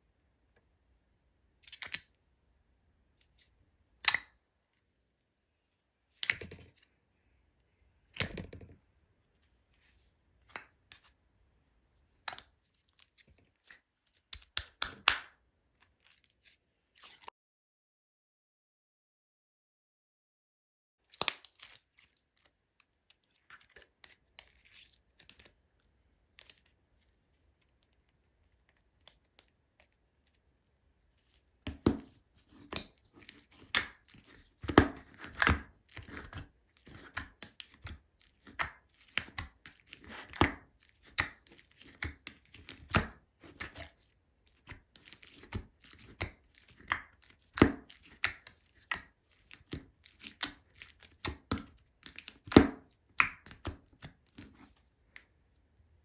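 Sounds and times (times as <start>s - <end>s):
sticky slime clicks and pops: 4.0s - 4.4s.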